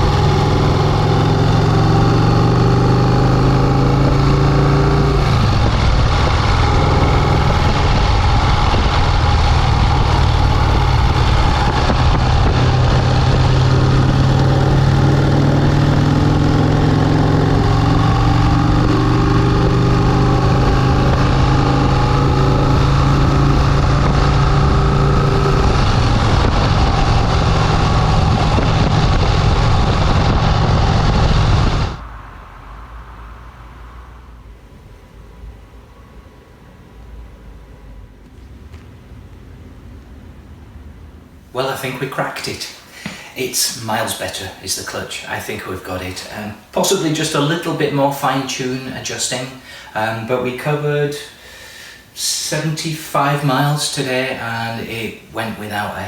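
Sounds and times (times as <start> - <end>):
motorcycle engine running: 0.0 - 32.0.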